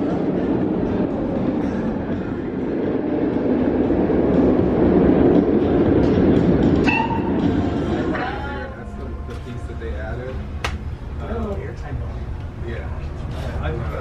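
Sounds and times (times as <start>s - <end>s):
train rumbling on track: 0.0s - 14.0s.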